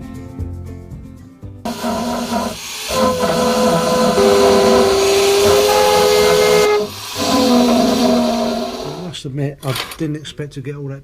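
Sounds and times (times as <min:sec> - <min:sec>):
background music of held chords: 0:00.0 - 0:01.7
steady hiss: 0:01.7 - 0:09.2.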